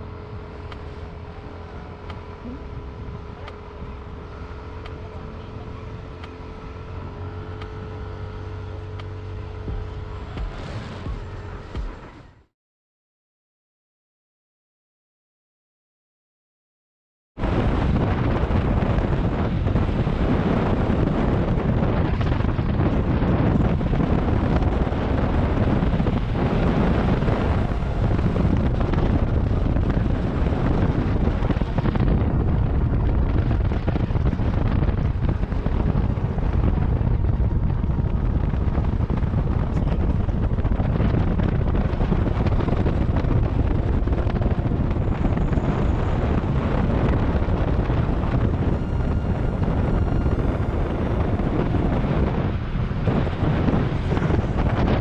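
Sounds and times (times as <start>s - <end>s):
wind buffeting microphone: 17.4s - 55.0s.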